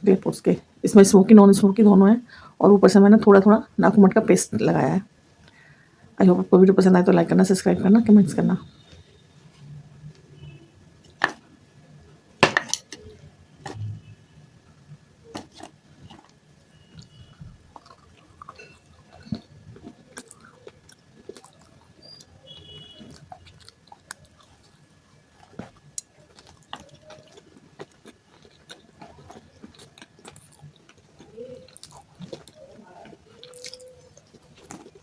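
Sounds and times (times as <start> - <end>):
clay pieces crunching when chewed: 15.3 - 35.0.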